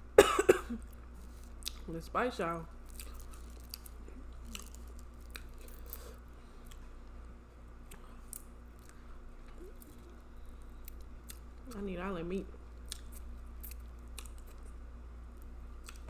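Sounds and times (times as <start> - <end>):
chewing and lip smacking: 0.8 - 1.9, 2.8 - 7.2, 7.8 - 11.8, 12.7 - 16.0.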